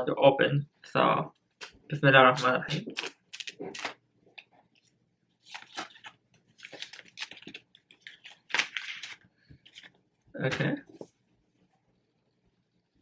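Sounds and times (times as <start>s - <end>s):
packaging crinkling and rustling: 5.4s - 10.0s.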